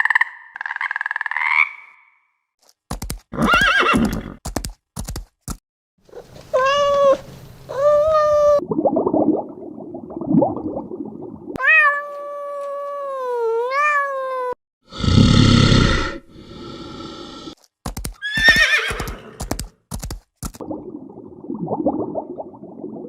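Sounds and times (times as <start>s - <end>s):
sharp clicks: 17.9s - 18.2s, 19.0s - 20.6s.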